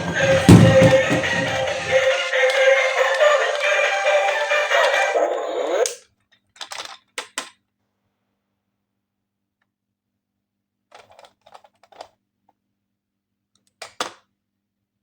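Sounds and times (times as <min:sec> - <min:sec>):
plastic toy pieces clicking: 0:06.5 - 0:07.6, 0:10.9 - 0:12.2.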